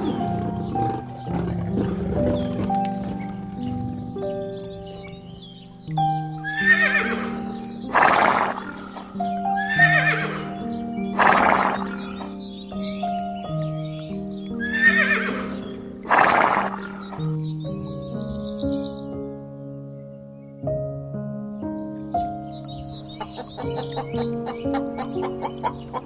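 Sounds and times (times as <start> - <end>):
background music with sustained notes: 0.0 - 26.0
horse whinnying: 6.4 - 12.4, 14.6 - 17.3.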